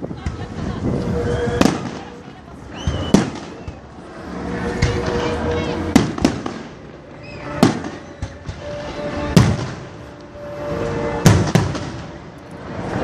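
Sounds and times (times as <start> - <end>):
fireworks booming: 0.0 - 3.9, 4.6 - 10.2, 10.9 - 12.3
music playing: 3.4 - 13.0.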